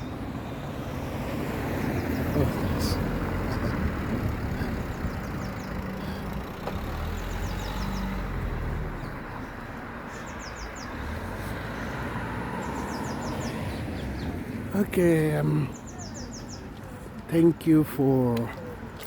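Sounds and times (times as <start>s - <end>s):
road traffic passing: 0.0s - 19.0s
bird chirping: 7.0s - 11.1s, 11.9s - 14.4s, 15.4s - 16.7s.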